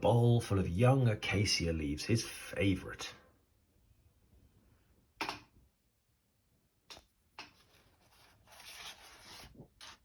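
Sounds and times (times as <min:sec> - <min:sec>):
paper page rustling: 0:07.5 - 0:10.0.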